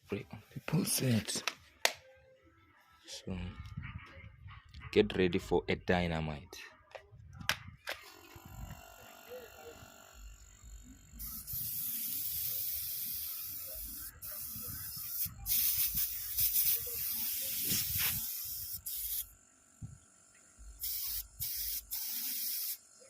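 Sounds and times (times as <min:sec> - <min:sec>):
spray nozzle hissing: 0:11.2 - 0:19.3, 0:20.8 - 0:22.8.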